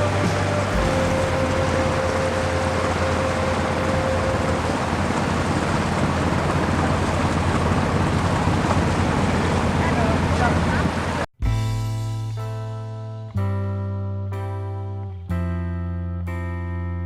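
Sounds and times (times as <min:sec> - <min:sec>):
thin whine: 0:00.0 - 0:11.2
low engine drone: 0:00.0 - 0:11.3.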